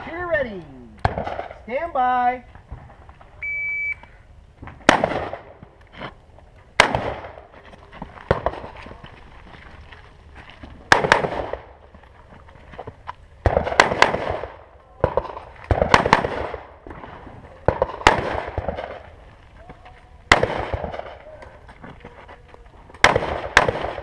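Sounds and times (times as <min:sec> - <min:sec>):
rifle shots with echo: 0:01.0 - 0:01.7, 0:04.8 - 0:05.6, 0:06.8 - 0:07.5, 0:10.9 - 0:11.8, 0:13.4 - 0:19.1, 0:20.3 - 0:21.4, 0:23.0 - 0:24.0.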